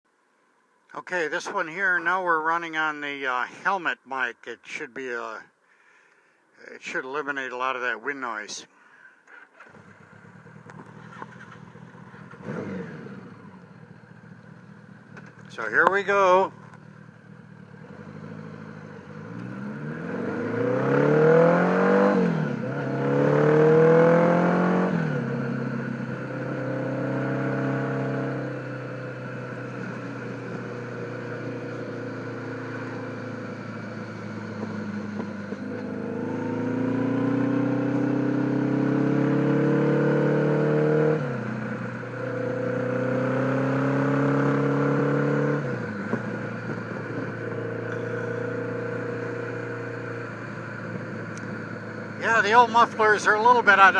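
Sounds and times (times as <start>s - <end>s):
motorcycle engine accelerating: 9.4s - 53.9s.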